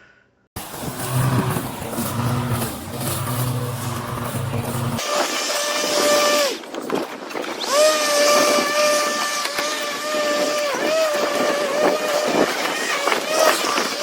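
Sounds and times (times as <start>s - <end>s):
electric motor whirring: 7.6s - 14.0s.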